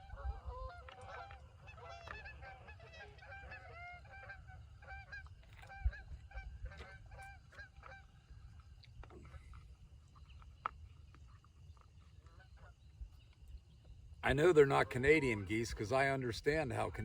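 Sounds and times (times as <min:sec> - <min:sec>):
geese honking: 0:00.0 - 0:08.1, 0:14.3 - 0:17.0.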